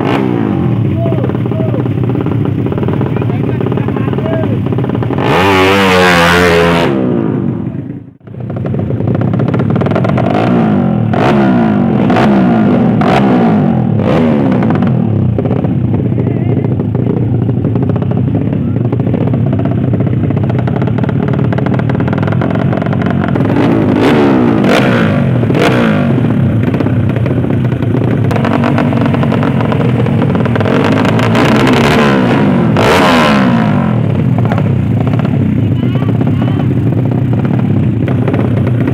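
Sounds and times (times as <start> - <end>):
motorcycle engines revving: 0.0 - 38.9.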